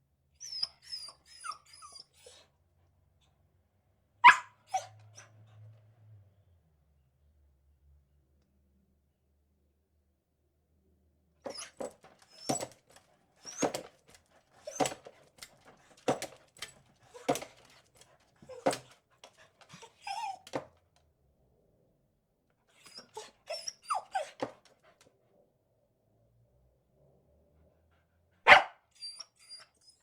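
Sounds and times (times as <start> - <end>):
dog barking: 4.2 - 5.3, 28.4 - 28.9.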